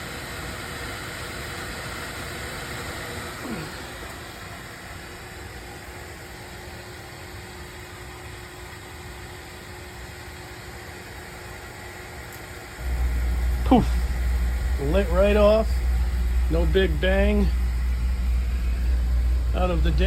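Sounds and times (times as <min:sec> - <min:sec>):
faint hum: 0:00.0 - 0:20.0
oil burner blower whooshing: 0:12.8 - 0:20.0.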